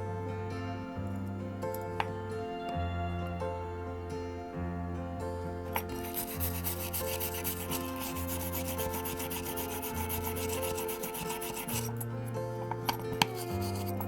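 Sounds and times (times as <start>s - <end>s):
soft background music: 0.0s - 14.0s
rubbing or filing strokes: 5.8s - 12.0s, 12.8s - 14.0s.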